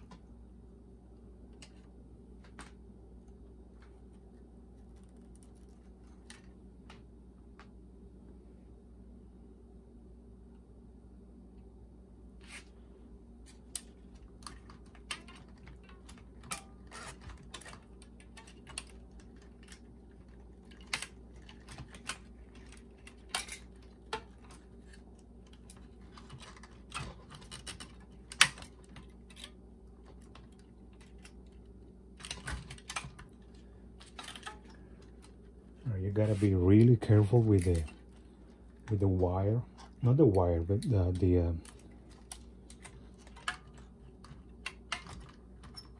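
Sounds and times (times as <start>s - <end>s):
small parts clicking and scraping: 13.4s - 45.9s.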